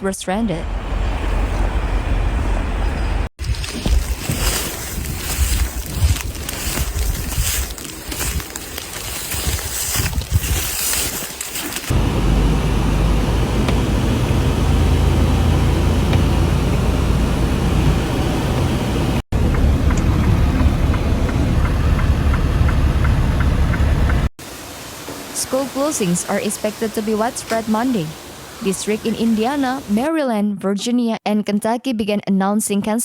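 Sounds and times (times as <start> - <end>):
vehicle driving rumble: 0.6 - 3.3, 11.8 - 24.3.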